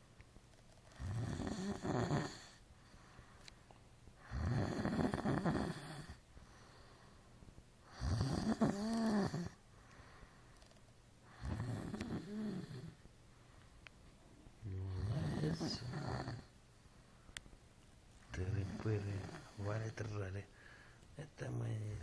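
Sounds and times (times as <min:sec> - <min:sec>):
man snoring: 0:01.0 - 0:02.6, 0:04.2 - 0:06.2, 0:07.9 - 0:09.6, 0:11.3 - 0:13.0, 0:14.6 - 0:16.5, 0:18.4 - 0:19.9.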